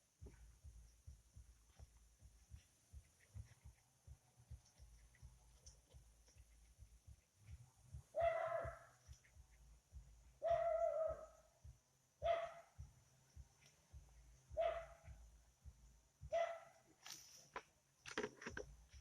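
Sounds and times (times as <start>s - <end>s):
dog barking: 8.1s - 9.0s, 10.4s - 11.4s, 12.2s - 12.8s, 14.6s - 15.1s, 16.3s - 16.8s.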